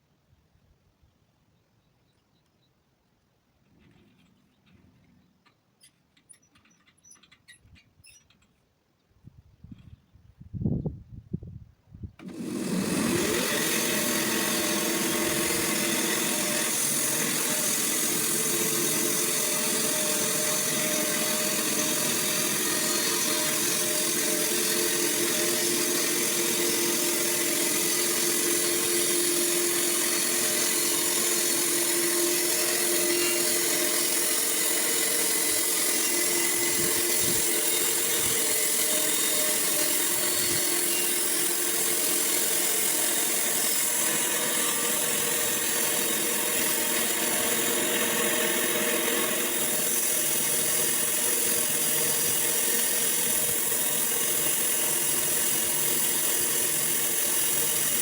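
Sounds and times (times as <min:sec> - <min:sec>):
saw cutting through wood: 0:12.2 - 0:58.0.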